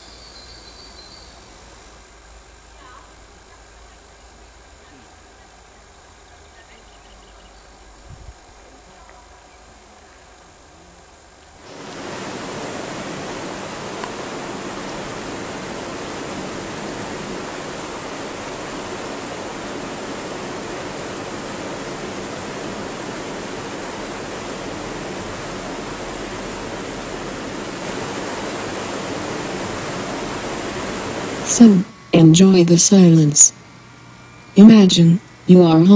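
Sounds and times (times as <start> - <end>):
falling water rushing: 11.6 - 33.3.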